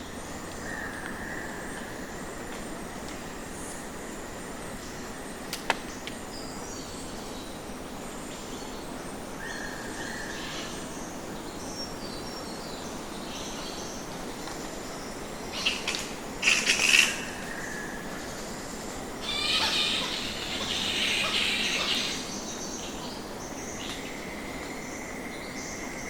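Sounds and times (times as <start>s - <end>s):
flying fox colony hiss: 0.2s - 26.0s
flying foxes calling: 15.5s - 25.8s
harsh bat calls: 19.2s - 22.3s.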